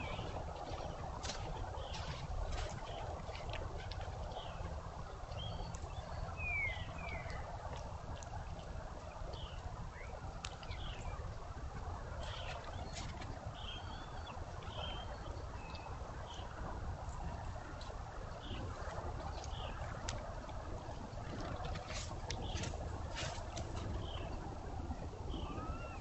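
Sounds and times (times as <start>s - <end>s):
steady low rumble: 0.0s - 26.0s
small birds chirping: 5.3s - 7.5s, 12.2s - 16.6s, 19.3s - 19.8s, 22.0s - 24.4s.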